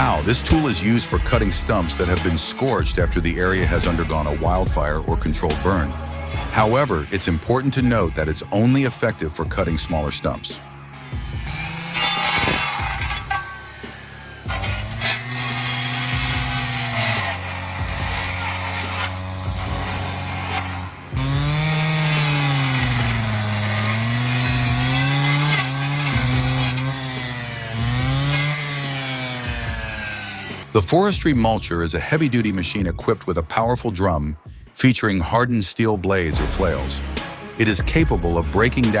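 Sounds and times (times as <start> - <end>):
stump cutter engine under load: 0.0 - 2.5, 10.8 - 30.7.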